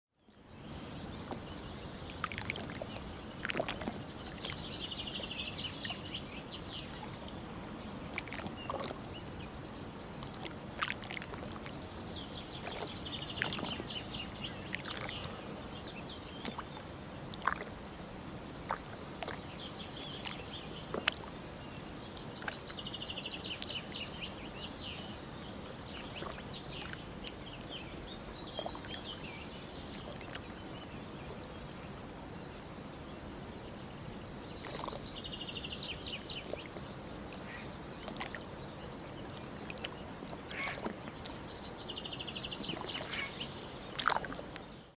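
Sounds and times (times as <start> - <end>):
river water lapping: 0.3 - 45.0
birds chirping in trills: 11.1 - 45.0.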